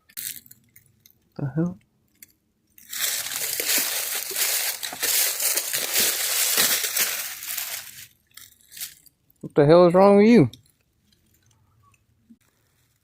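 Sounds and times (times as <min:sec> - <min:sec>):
crunching through dry leaves: 0:02.8 - 0:09.1.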